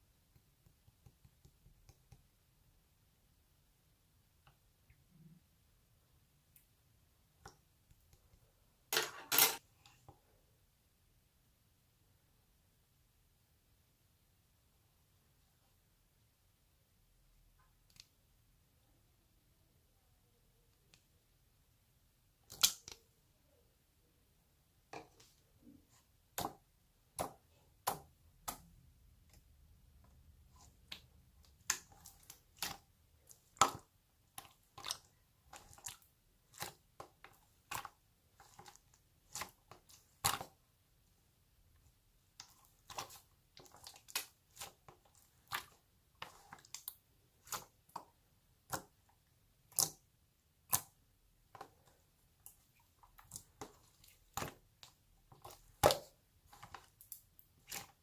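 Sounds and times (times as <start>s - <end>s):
wet clicks and pops of slime: 49.7s - 50.0s.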